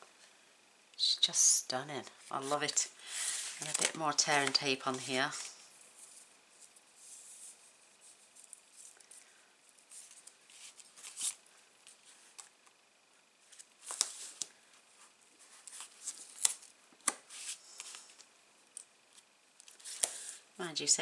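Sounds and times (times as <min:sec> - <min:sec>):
paper rustling and rubbing: 0:02.3 - 0:09.2, 0:09.9 - 0:12.5, 0:13.4 - 0:14.4, 0:15.0 - 0:18.2
tape peeling: 0:15.6 - 0:18.2.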